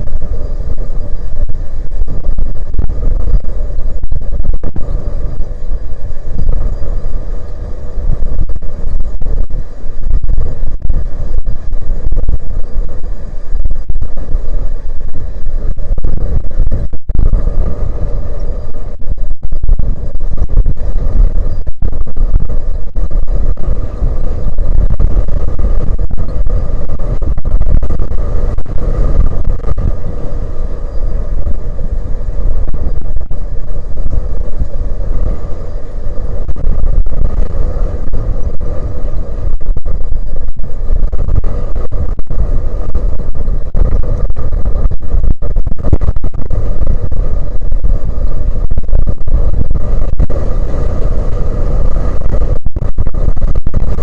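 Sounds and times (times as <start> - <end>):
wind buffeting microphone: 0.0 - 54.0.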